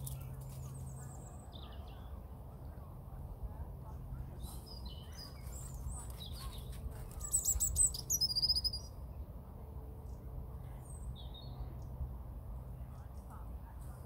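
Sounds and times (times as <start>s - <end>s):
birds chirping: 4.2s - 9.0s.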